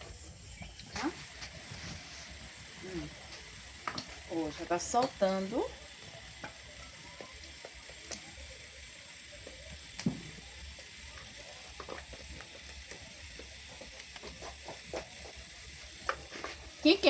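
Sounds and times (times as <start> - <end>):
sizzling hiss: 0.0 - 17.0.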